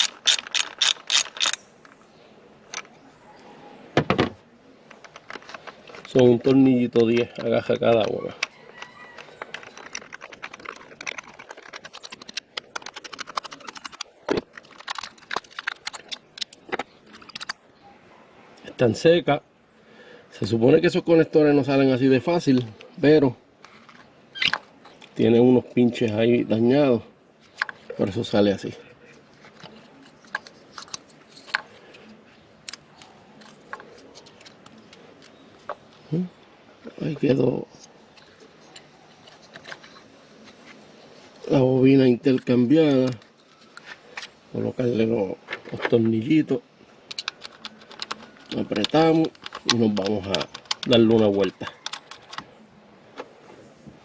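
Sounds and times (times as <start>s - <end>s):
socket ratchet clicking: 0.0s - 1.6s
electrical connectors clicking: 9.2s - 17.6s, 47.1s - 52.5s.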